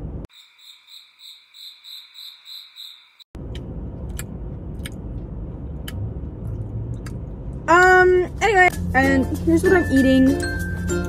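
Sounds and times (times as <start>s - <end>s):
cricket chirping: 0.3s - 3.3s.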